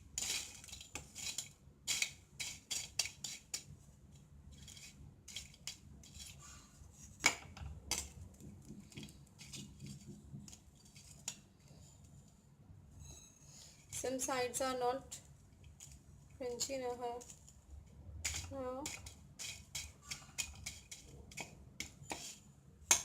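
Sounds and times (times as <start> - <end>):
spatula scraping bread crust in pan: 0.0 - 3.7, 4.5 - 7.3, 18.2 - 23.0.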